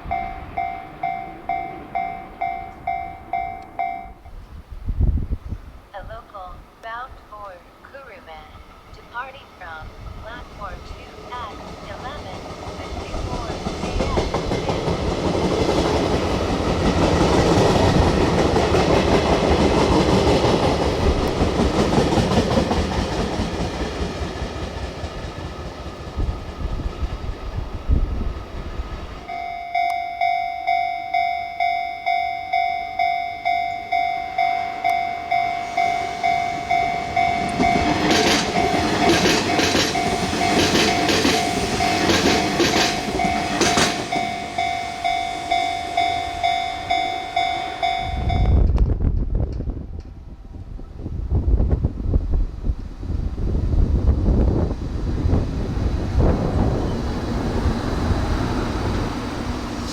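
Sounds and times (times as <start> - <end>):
level crossing bell dinging: 0.0 - 4.3, 29.2 - 48.6
train running past: 0.0 - 59.9
train wheels clacking over rail joints: 36.6 - 44.8.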